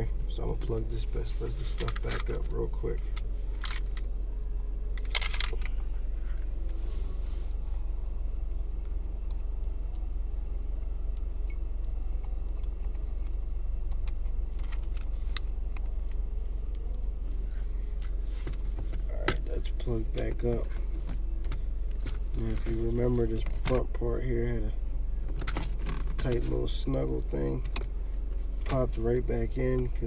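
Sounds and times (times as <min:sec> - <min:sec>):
steady low hum: 0:00.0 - 0:30.0
scrape: 0:06.8 - 0:07.6.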